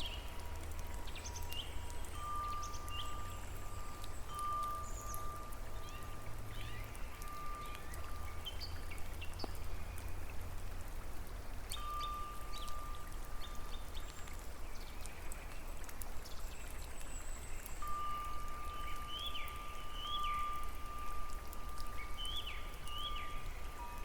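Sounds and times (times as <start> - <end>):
thin steady tone: 0.0 - 8.4
drip-like ticks: 0.0 - 24.0
rain or running water: 0.0 - 24.0.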